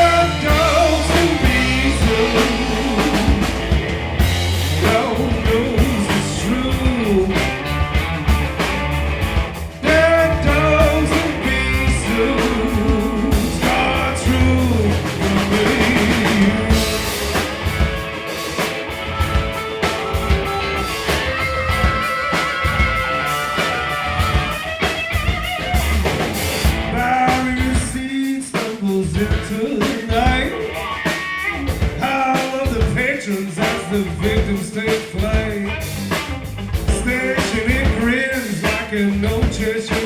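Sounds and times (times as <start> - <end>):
lead guitar bending notes: 0.0 - 27.1
drum kit: 0.0 - 40.0.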